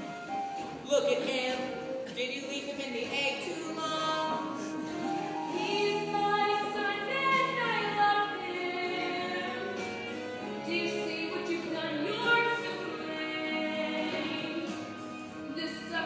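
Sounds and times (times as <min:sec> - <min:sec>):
woman singing: 0:00.8 - 0:04.7, 0:05.5 - 0:16.0.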